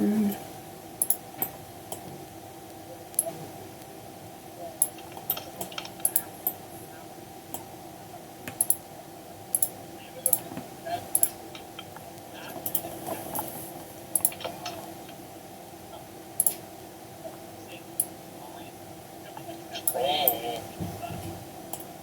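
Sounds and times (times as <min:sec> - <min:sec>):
faint steady hum: 0:00.0 - 0:22.0
keyboard and mouse clicking: 0:14.2 - 0:14.5, 0:16.4 - 0:16.6.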